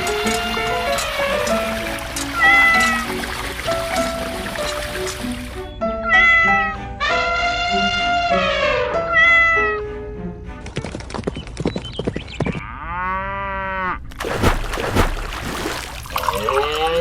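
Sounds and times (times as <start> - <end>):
meow-like animal call: 2.4 - 3.1, 6.0 - 9.8.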